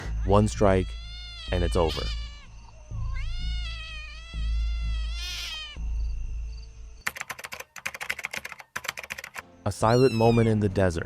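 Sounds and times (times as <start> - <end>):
low background music: 0.0 - 7.5, 9.0 - 11.0
kitten meowing: 0.8 - 5.8, 9.9 - 10.5
fast dry rattling clicks: 7.1 - 9.4.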